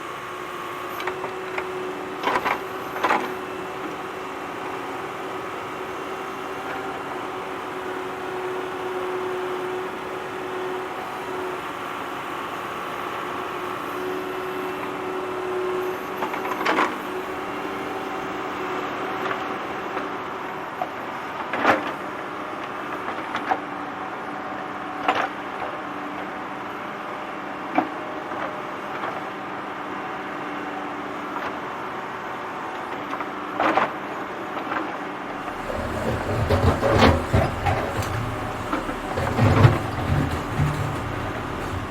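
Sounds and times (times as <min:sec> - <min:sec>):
tractor engine running: 0:35.4 - 0:41.9.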